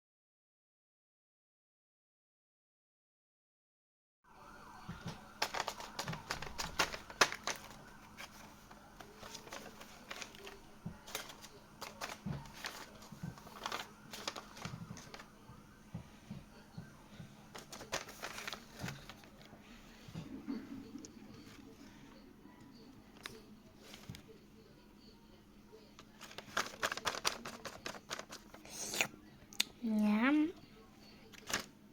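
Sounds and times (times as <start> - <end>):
squishy toys crinkling and tapping: 4.9 - 15.3, 15.9 - 19.6, 26.0 - 28.6, 31.3 - 31.7.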